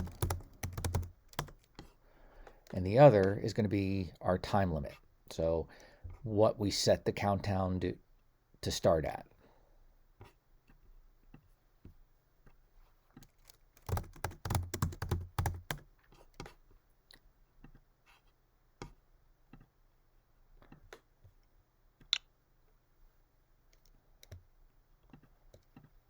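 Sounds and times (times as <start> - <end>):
typing on computer keyboard: 0.0 - 1.7, 13.2 - 15.8.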